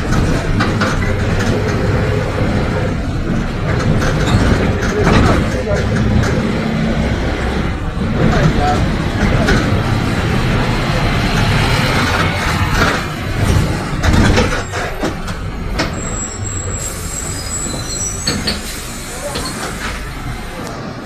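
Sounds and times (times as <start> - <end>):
bus engine and road noise: 0.0 - 21.0
thin high squeals: 16.0 - 19.7.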